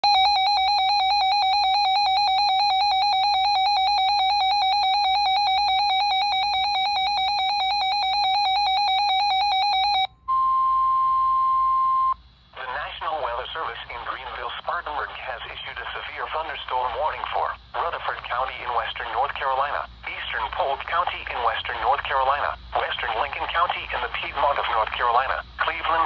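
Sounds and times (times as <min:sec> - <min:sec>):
steady alarm tone: 0:00.0 - 0:10.1.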